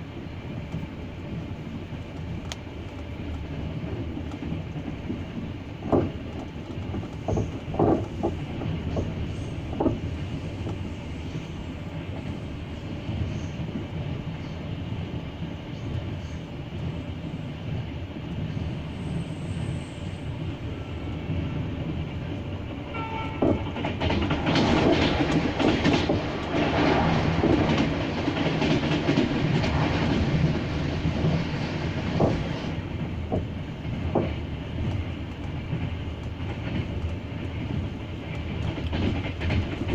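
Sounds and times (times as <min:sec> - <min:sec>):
train rolling at speed: 0:00.0 - 0:39.9
wheels clacking over rail joints: 0:02.0 - 0:10.9, 0:22.7 - 0:39.9.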